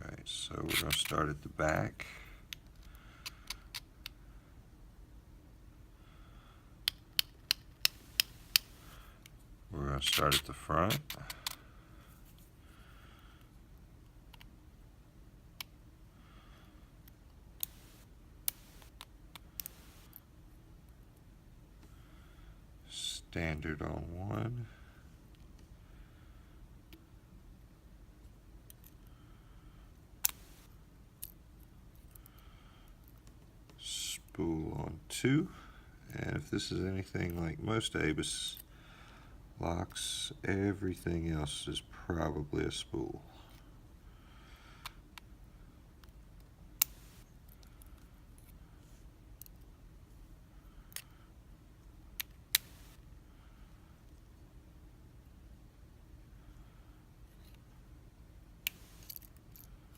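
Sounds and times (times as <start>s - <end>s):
light clicks of metal parts: 49.3s - 49.7s, 58.6s - 59.9s.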